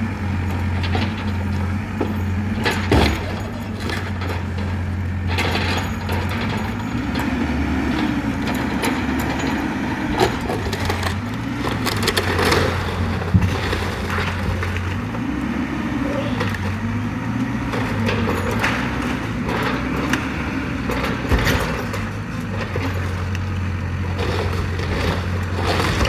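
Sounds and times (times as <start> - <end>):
excavator diesel engine running: 0.0 - 26.0
wooden framing cracking and splintering: 8.0 - 15.4, 17.6 - 26.0.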